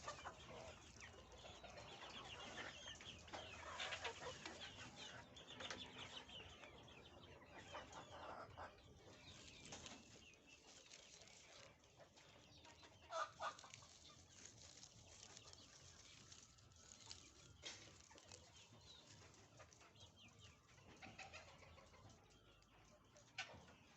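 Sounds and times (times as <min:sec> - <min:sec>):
chickens clucking faintly: 0:00.0 - 0:23.9.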